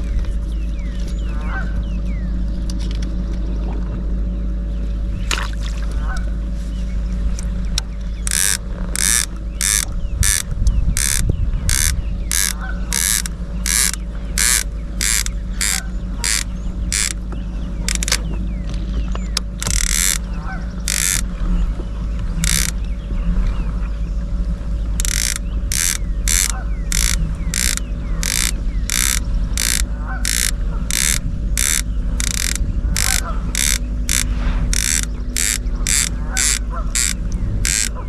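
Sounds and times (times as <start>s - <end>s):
motor humming: 4.3s - 38.0s.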